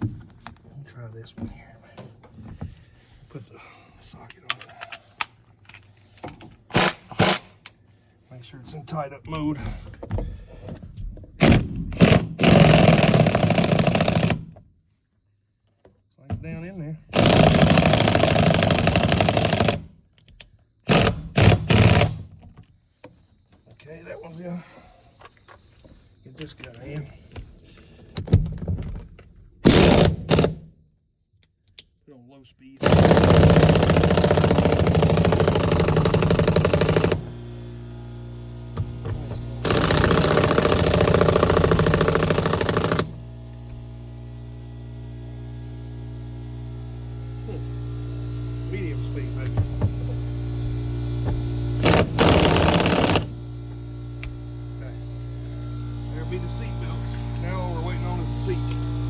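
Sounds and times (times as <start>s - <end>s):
pneumatic impact wrench hammering: 6.3s - 7.8s, 11.4s - 14.6s, 17.1s - 20.0s, 20.8s - 22.4s, 29.6s - 30.7s, 32.8s - 37.3s, 38.7s - 43.2s, 51.2s - 53.4s.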